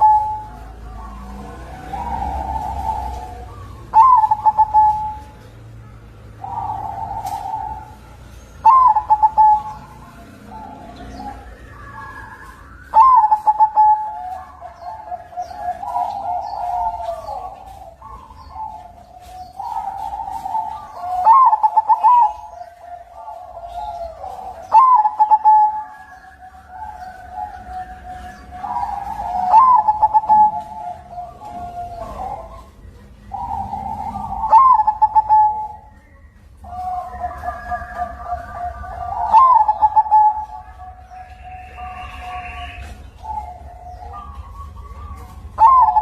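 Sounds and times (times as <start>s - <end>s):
dove cooing: 0.0s - 46.0s.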